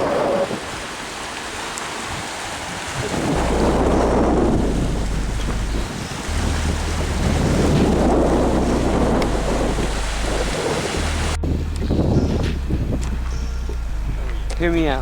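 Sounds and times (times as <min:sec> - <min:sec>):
wind on microphone: 0:00.0 - 0:15.0
low buffeting rumble: 0:03.2 - 0:15.0.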